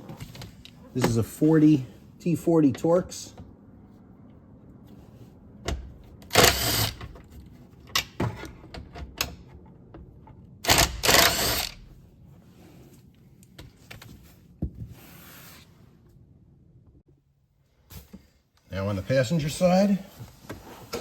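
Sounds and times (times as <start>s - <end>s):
loud rasping bursts: 6.4s - 7.0s.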